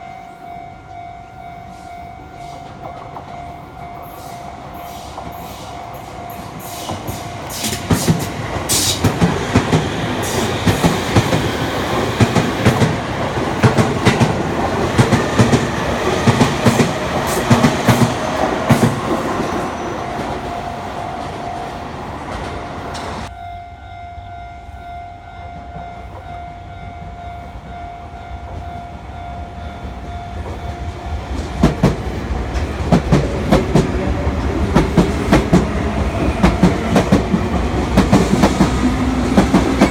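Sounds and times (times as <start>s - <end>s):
crossing warning tone: 0.0s - 39.9s
train wheels clattering over rail joints: 31.3s - 39.9s.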